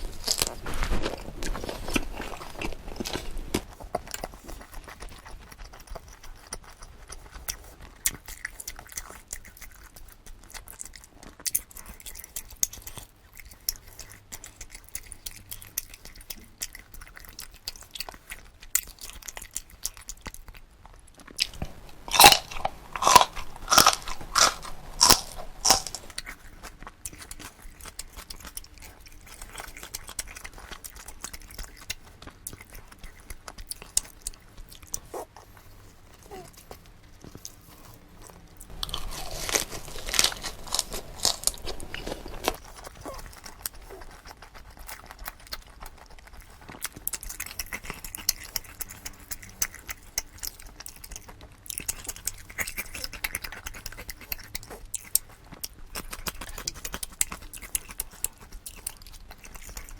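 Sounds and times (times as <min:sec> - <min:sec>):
loud crunchy bites: 0:00.0 - 0:04.3, 0:21.4 - 0:26.4, 0:38.6 - 0:43.6
wet chewing: 0:00.0 - 0:59.9.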